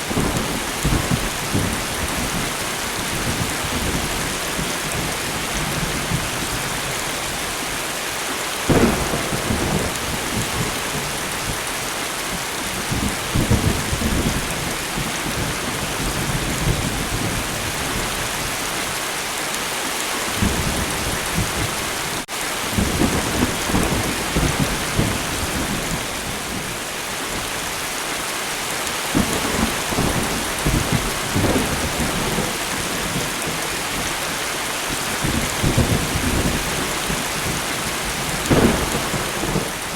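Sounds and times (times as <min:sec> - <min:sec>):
light rain hissing: 0:05.7 - 0:16.7
thunder rumbling: 0:08.7 - 0:18.1, 0:29.1 - 0:34.3, 0:34.9 - 0:39.9.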